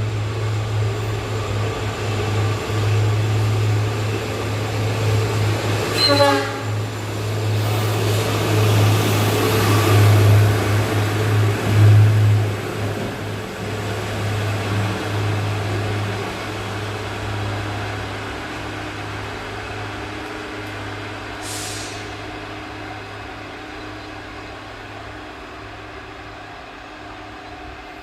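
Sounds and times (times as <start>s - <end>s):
train low drone: 0.0s - 28.0s
short high hiss: 21.4s - 22.1s.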